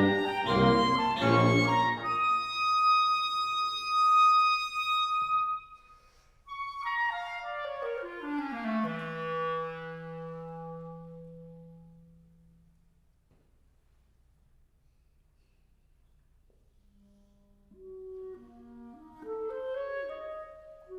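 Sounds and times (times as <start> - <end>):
band music: 0.0 - 2.4
clarinet melody: 0.0 - 5.9, 6.5 - 12.5, 17.6 - 20.9.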